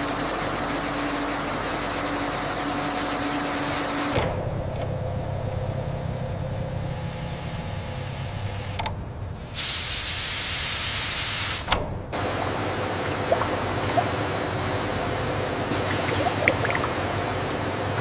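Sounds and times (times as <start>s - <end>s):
low machine hum: 4.2s - 9.3s, 11.9s - 18.0s.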